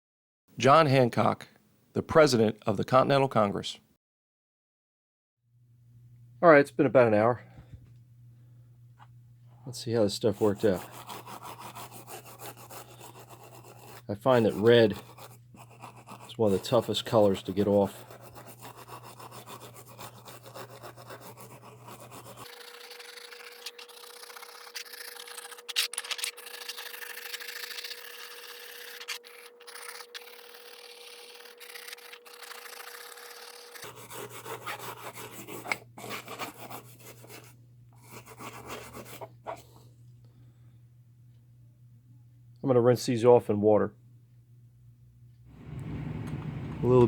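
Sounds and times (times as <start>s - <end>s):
scrubbing and scraping on metal: 10.2s - 25.4s.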